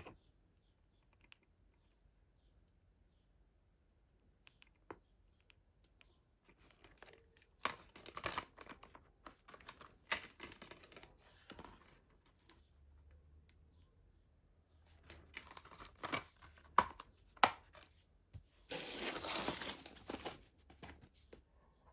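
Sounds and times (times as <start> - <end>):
plastic packaging crinkling and tearing: 6.9 - 11.3, 15.1 - 16.4, 18.7 - 20.9.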